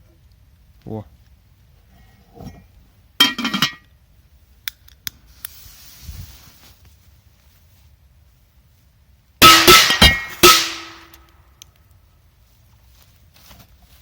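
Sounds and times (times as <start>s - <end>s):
brief hiss: 5.1s - 6.8s.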